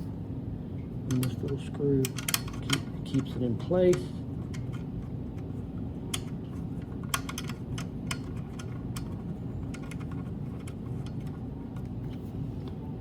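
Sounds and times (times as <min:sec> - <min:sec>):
steady low hum: 0:00.0 - 0:13.0
small metal parts clicking: 0:06.1 - 0:11.4.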